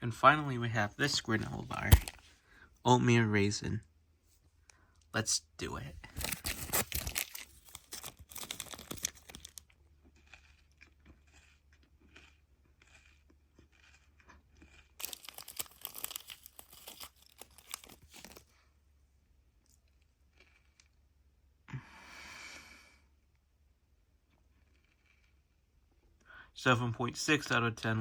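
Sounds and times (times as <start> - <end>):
wrapper crinkling and tearing: 1.7 - 2.2, 6.1 - 10.7, 13.8 - 18.5
crunchy chewing: 6.1 - 18.6, 19.6 - 21.0, 24.3 - 26.0.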